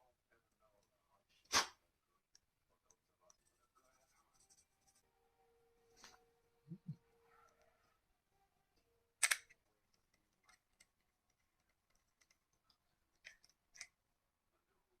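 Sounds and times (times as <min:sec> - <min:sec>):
toy pistol plastic clicks: 0:09.2 - 0:09.6.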